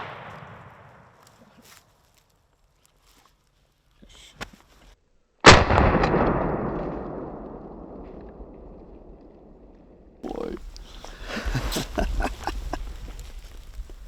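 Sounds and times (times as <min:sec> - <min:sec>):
shotgun shot echoing: 0:05.4 - 0:10.0.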